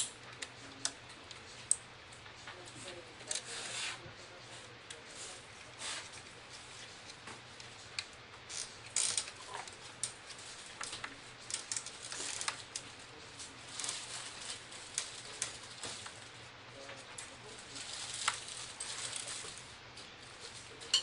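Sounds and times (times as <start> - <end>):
small parts clicking and scraping: 7.6 - 12.9.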